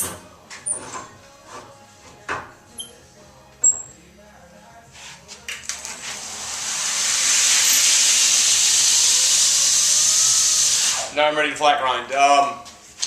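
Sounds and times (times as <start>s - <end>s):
belt grinder hissing: 6.0s - 11.2s.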